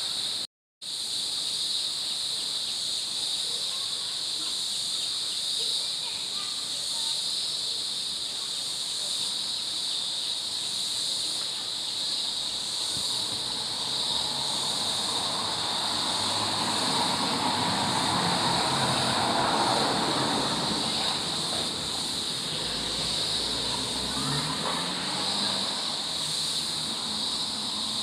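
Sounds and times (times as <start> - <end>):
insects buzzing: 0.0 - 28.0.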